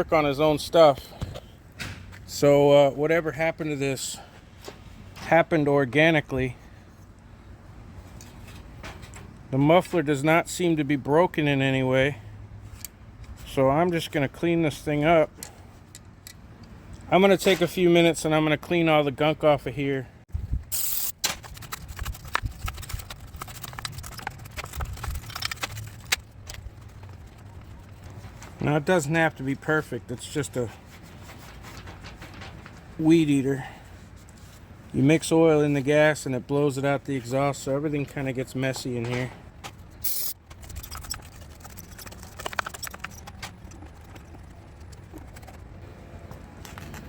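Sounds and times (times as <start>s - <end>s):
tools and small parts clinking: 20.7s - 28.6s, 38.7s - 44.5s.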